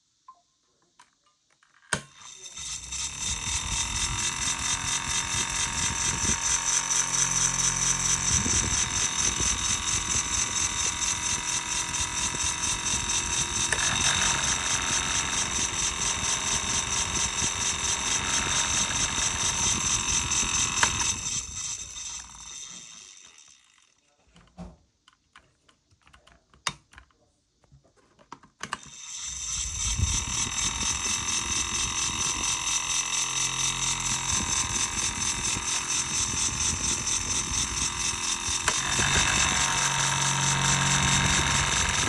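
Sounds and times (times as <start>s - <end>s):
electric fan whirring: 1.9s - 23.9s, 28.6s - 42.0s.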